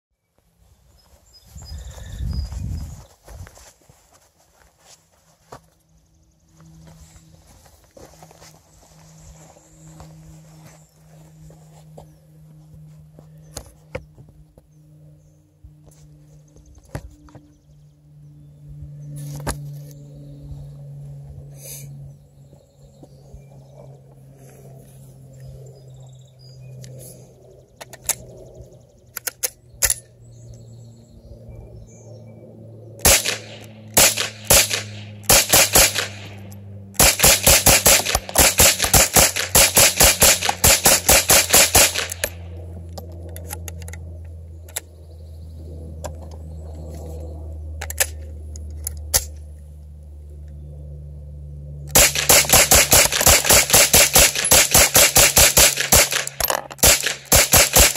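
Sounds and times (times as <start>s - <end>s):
steady low hum: 0.2s - 57.9s
rifle shots: 33.0s - 42.4s, 51.9s - 57.9s.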